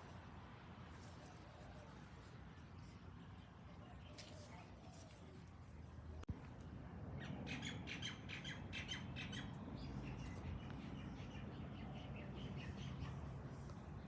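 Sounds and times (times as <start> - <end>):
birds chattering and squawking: 7.2 - 13.6.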